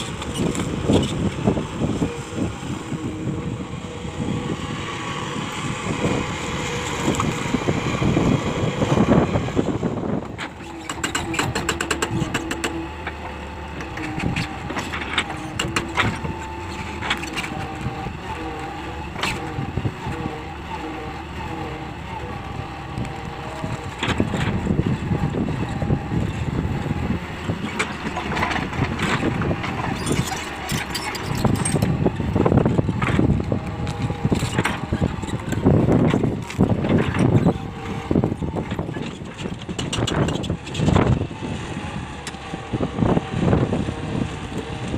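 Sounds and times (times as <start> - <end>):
excavator diesel engine running: 0.0 - 44.9
machine knocks and clanks: 10.4 - 17.5.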